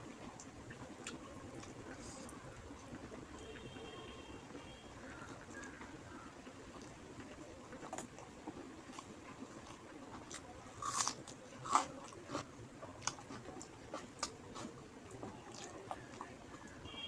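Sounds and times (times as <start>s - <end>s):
person chewing food: 6.8s - 16.8s.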